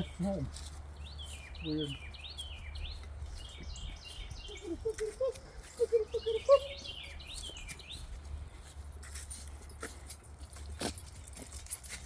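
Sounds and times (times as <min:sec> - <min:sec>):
songbird chirping and trilling: 0:00.0 - 0:08.8
chickens clucking: 0:04.4 - 0:07.5.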